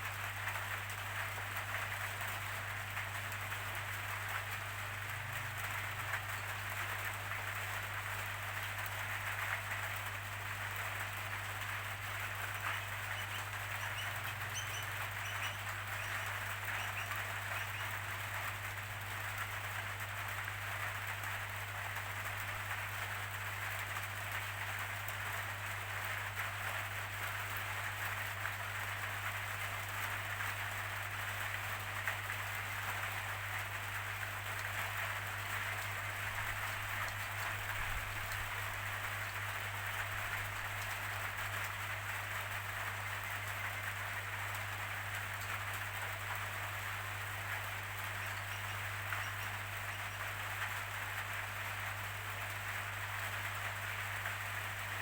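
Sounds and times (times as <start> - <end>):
steady rainfall: 0.0 - 55.0
constant low hum: 10.9 - 19.9.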